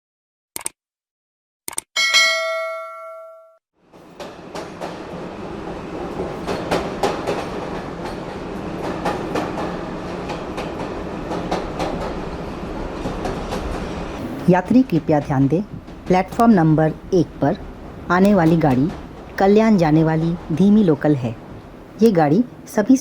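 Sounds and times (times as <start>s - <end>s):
bell-like chime: 2.0s - 3.6s
train rumbling on rails: 3.8s - 23.0s
wheels clacking over rail joints: 3.9s - 22.2s.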